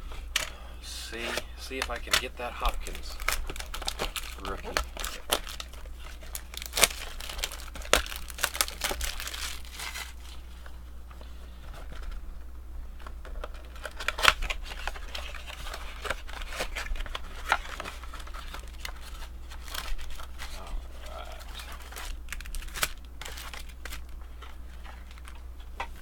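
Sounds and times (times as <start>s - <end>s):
cardboard tearing: 1.1s - 10.3s
plastic wrapping crinkling: 1.7s - 10.8s, 13.4s - 26.0s.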